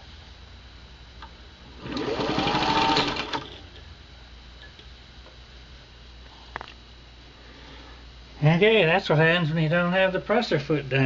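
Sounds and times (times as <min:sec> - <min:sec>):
sewing machine motor whine: 0:01.8 - 0:03.6.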